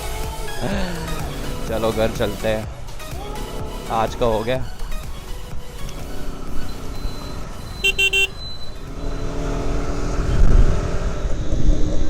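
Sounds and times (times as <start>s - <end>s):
motorcycle engine: 0.0s - 12.0s
road noise: 0.0s - 12.0s
vehicle horn toot: 6.1s - 11.0s.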